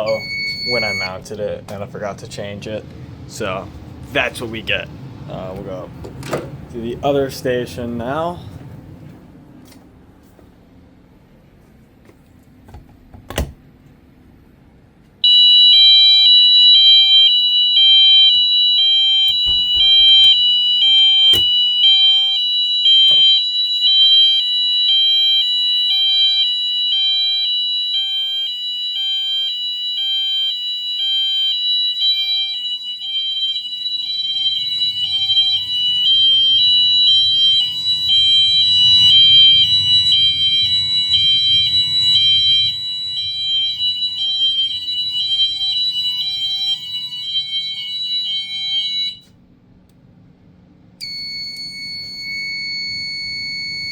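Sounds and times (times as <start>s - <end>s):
hi-lo fire alarm horns: 0.0s - 1.2s, 15.2s - 49.3s, 51.0s - 53.9s.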